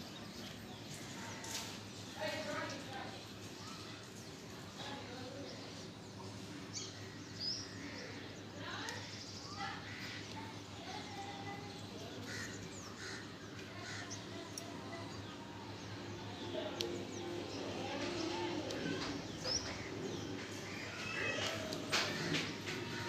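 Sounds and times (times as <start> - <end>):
birds whistling and cawing: 17.1 - 23.0.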